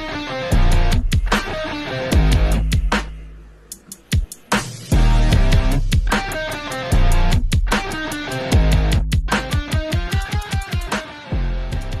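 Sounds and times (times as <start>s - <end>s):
rock music with electric guitar: 0.0s - 3.1s, 4.6s - 12.0s
fast drum beat: 0.5s - 11.1s.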